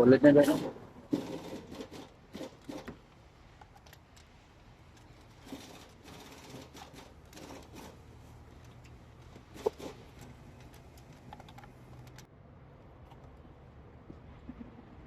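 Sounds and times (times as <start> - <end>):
hand tools clicking and scraping: 0.4 - 12.3.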